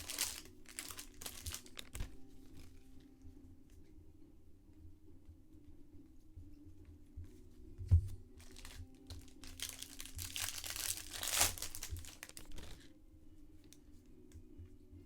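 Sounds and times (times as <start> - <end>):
foil wrapper tearing and crinkling: 0.0 - 2.1, 8.4 - 12.8.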